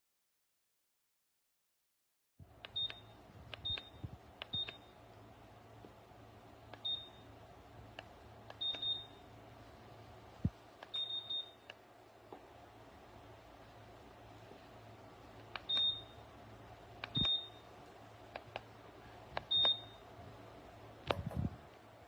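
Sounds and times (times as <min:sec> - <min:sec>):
faint steady hum: 0:02.4 - 0:22.0
heater beeping: 0:02.6 - 0:05.2, 0:06.4 - 0:11.8, 0:14.0 - 0:20.5.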